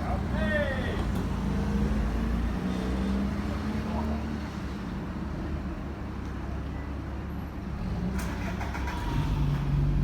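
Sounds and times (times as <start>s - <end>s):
bus diesel engine rumbling: 0.0s - 2.7s, 5.0s - 10.0s.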